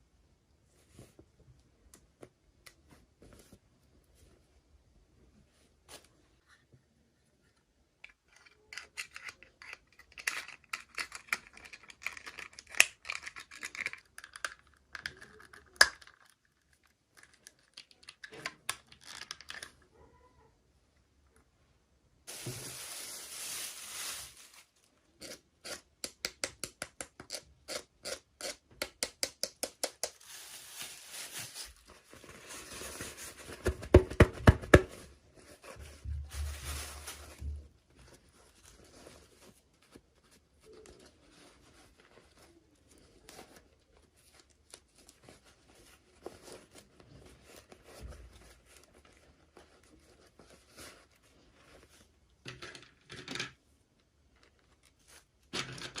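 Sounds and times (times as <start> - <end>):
faint handling noises: 0.5 - 14.0, 30.0 - 56.0
plastic rustling: 22.3 - 24.9, 30.0 - 52.4.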